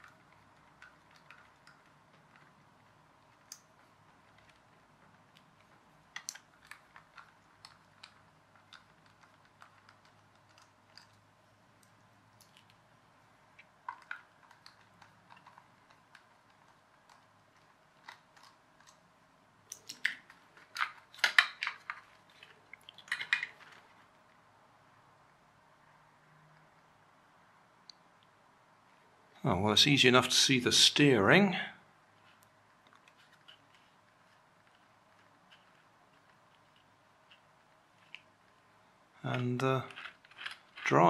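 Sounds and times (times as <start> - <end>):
plastic parts clattering: 0.0 - 11.2, 13.5 - 19.0, 19.7 - 24.1, 39.3 - 41.0
plastic toy car clicks and taps: 19.7 - 23.8.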